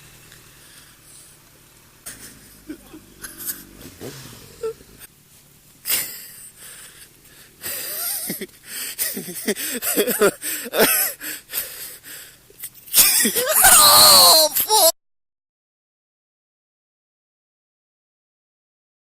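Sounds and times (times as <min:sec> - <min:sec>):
person making wheezing vocal sounds: 0:02.1 - 0:05.0.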